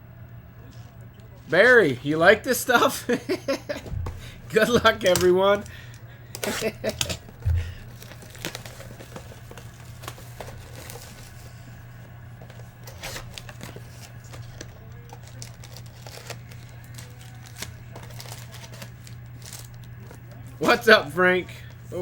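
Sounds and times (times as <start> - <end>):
steady low hum: 0.0 - 22.0
packaging rustling and crinkling: 3.7 - 20.8.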